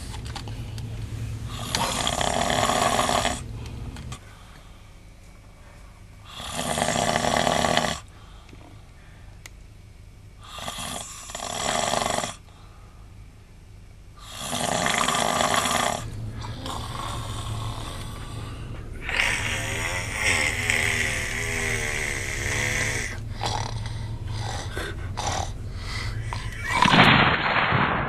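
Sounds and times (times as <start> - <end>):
man snoring heavily: 1.5 - 3.5, 6.2 - 8.1, 10.4 - 12.5, 14.2 - 26.9.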